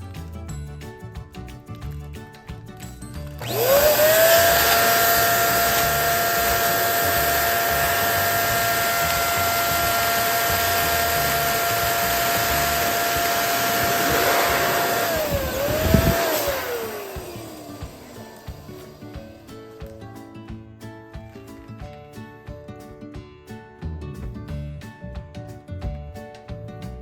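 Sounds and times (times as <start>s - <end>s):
electric balloon pump whining: 3.3s - 19.6s.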